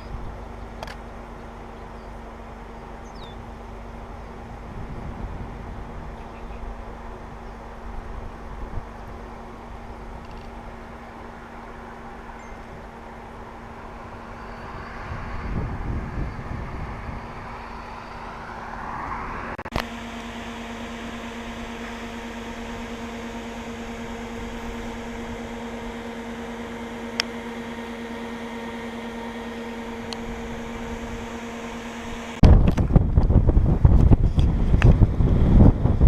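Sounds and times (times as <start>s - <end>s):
car interior hum: 0.0s - 36.0s
rising whoosh: 12.2s - 19.7s.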